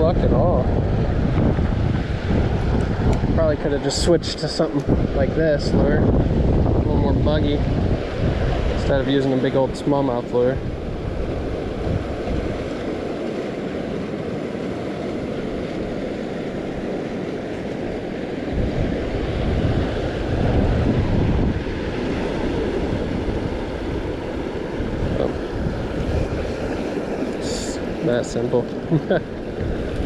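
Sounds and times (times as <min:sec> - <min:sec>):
creek water rushing: 0:00.0 - 0:30.0
wind buffeting microphone: 0:00.0 - 0:30.0.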